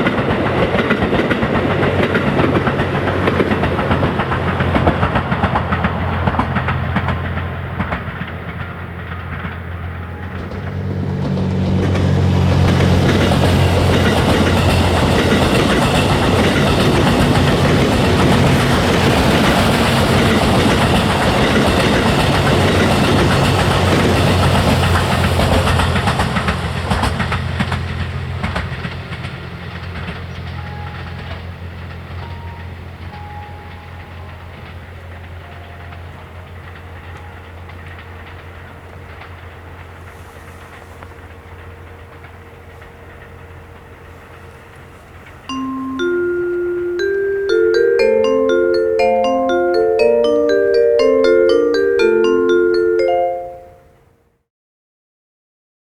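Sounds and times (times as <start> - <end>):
wheels clattering over rail joints: 0.0 - 32.8
diesel train engines humming: 0.0 - 53.8.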